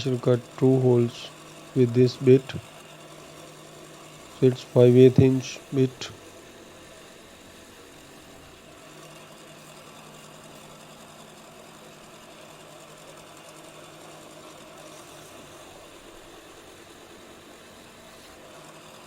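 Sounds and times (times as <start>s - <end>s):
drill motor humming: 0.0s - 8.6s.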